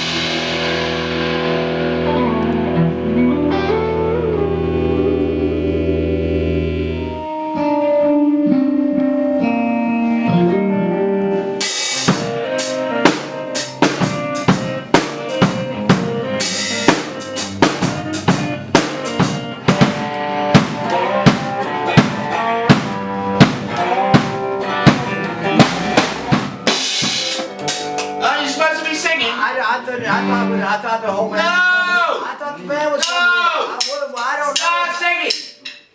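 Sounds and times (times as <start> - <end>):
cymbal crash: 0.0 - 2.2
drum kit beat: 0.0 - 3.8, 8.7 - 29.4, 33.0 - 35.9
guitar and bass notes: 0.0 - 32.0.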